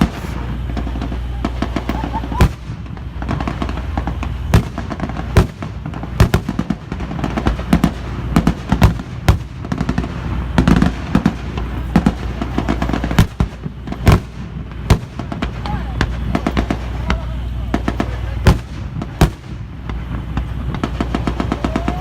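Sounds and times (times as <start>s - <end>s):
low hum: 0.0s - 6.2s
gunfire and pyrotechnic bangs: 0.0s - 22.0s.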